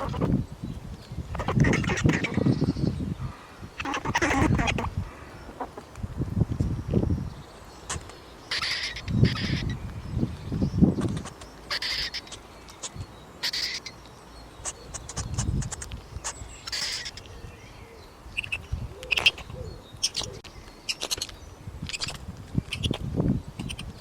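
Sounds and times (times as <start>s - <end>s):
small animal chirping and clicking: 0.0s - 0.4s, 14.6s - 17.4s, 18.4s - 23.0s, 23.6s - 24.0s.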